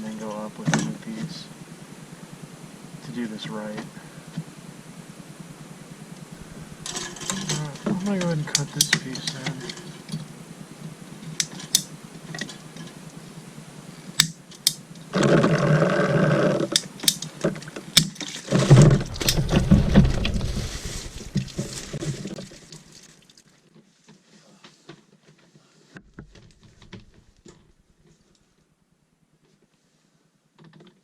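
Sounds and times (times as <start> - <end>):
knocks and clicks: 18.6 - 22.2.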